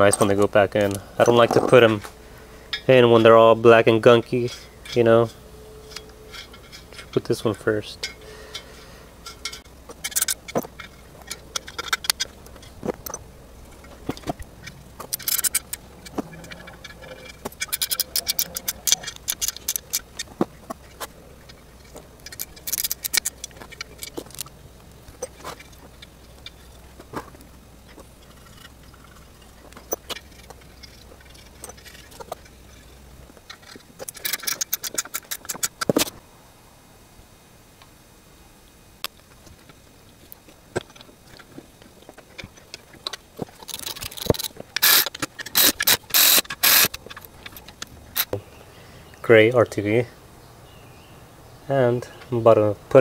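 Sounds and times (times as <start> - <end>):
metal tools clinking on engine parts: 0.0 - 2.1, 2.7 - 36.1, 42.1 - 48.4
rapid metallic clicks: 8.0 - 27.2, 42.3 - 48.4.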